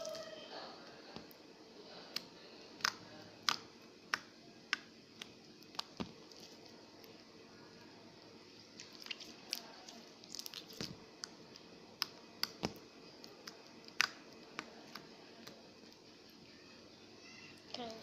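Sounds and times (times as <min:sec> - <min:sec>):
slime squishing by hand: 0:02.1 - 0:07.3, 0:08.5 - 0:16.4
sharp pops and clicks: 0:02.2 - 0:06.2, 0:12.0 - 0:15.1.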